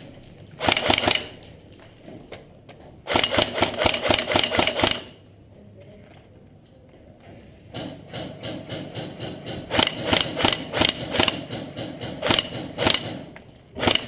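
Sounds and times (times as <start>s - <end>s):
airsoft gun firing bursts: 0.6s - 1.4s, 3.1s - 5.2s, 8.2s - 14.0s.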